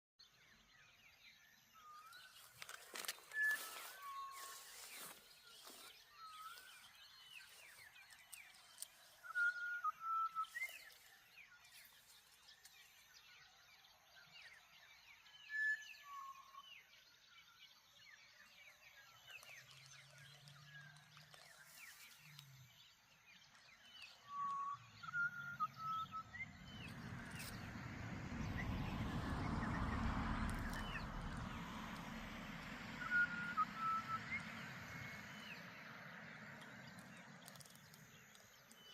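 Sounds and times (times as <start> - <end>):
birds chirping: 0.2 - 38.9
bird whistled phrase: 33.0 - 34.5.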